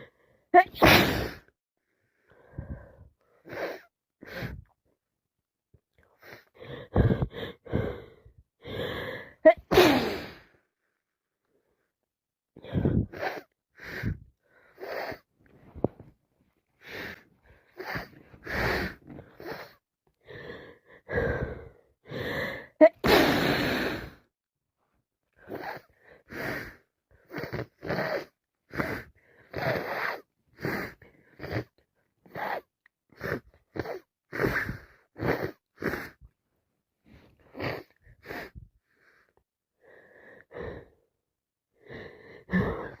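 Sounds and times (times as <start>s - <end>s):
woman sneezing: 0.6s - 1.4s, 9.5s - 10.3s
woman gasping breaths: 6.2s - 10.6s, 12.6s - 15.9s, 16.8s - 24.3s.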